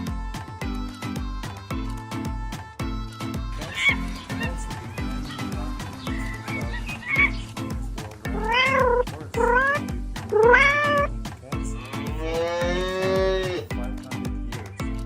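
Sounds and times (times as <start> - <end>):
background music with steady beat: 0.0 - 15.0
cat meowing: 3.7 - 5.4, 6.2 - 7.5, 8.3 - 11.1.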